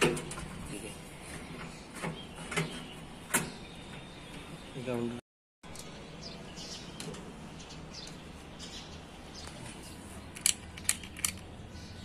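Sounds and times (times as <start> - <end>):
birds chirping faintly: 0.7 - 12.0
sharp clicks: 10.3 - 11.5.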